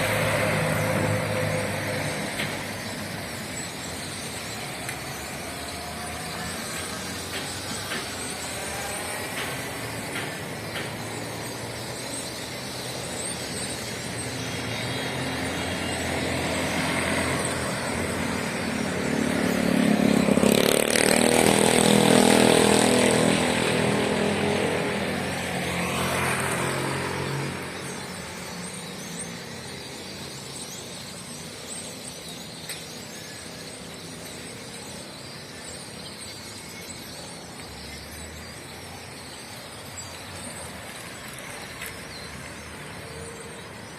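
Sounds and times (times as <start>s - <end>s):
vehicle engine passing by: 0.0s - 3.0s, 15.0s - 28.1s.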